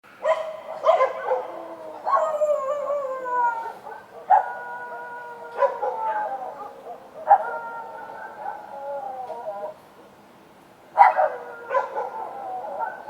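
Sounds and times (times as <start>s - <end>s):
dogs barking: 0.2s - 3.0s, 3.6s - 8.8s, 11.0s - 13.0s
dogs howling: 0.2s - 9.8s, 11.0s - 13.0s.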